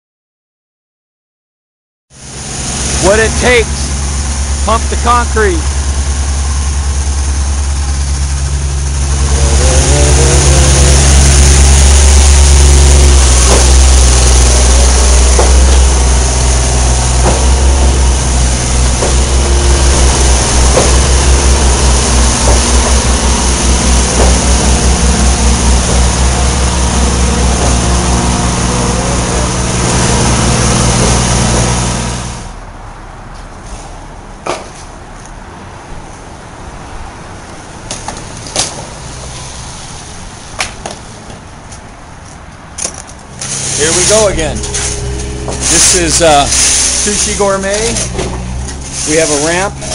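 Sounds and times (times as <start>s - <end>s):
pump engine running loudly: 2.1s - 32.6s, 42.8s - 49.9s.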